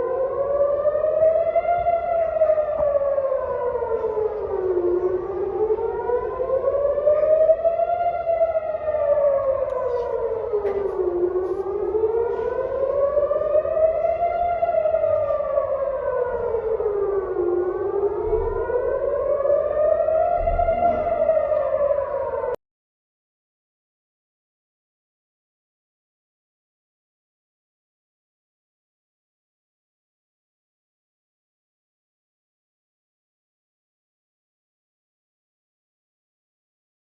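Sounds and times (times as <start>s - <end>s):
air raid siren wailing: 0.0s - 22.6s.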